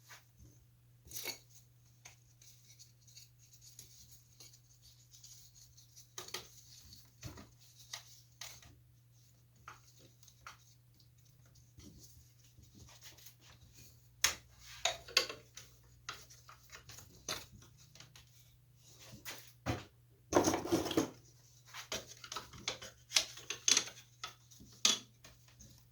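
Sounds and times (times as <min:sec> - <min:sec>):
wooden parts and clamps clicking: 0:21.9 - 0:25.4.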